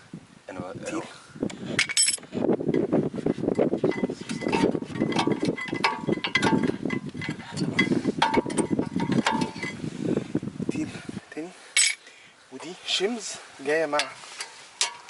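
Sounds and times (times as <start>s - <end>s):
metal parts clinking and ringing: 1.8s - 2.2s, 3.9s - 9.8s, 11.8s - 12.0s.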